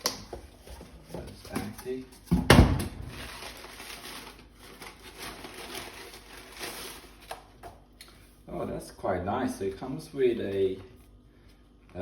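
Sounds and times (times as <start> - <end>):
cardboard and paper packaging rustling: 0.0 - 7.7.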